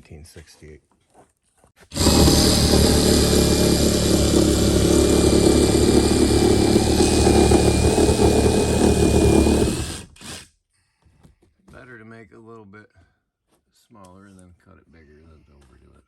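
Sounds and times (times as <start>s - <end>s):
power tool cutting: 1.9s - 10.4s.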